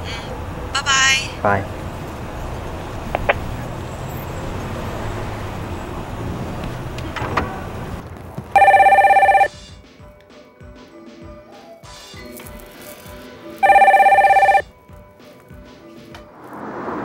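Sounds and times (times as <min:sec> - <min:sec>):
telephone ringing: 0:08.5 - 0:09.5, 0:13.6 - 0:14.7.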